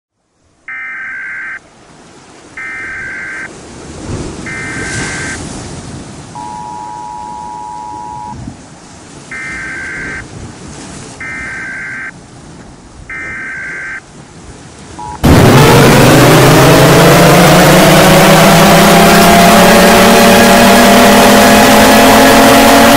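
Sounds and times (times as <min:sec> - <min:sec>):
two-tone attention signal: 0:00.7 - 0:01.6, 0:02.6 - 0:03.5, 0:04.5 - 0:05.4, 0:06.4 - 0:08.4, 0:09.3 - 0:10.2, 0:11.2 - 0:12.1, 0:13.1 - 0:14.0, 0:15.0 - 0:15.3
screeching data tones: 0:02.6 - 0:03.5, 0:04.5 - 0:05.4, 0:09.3 - 0:10.2, 0:13.1 - 0:14.0
siren-like wail: 0:02.6 - 0:03.5, 0:04.5 - 0:05.5, 0:09.3 - 0:10.2, 0:13.1 - 0:14.0, 0:15.0 - 0:22.9.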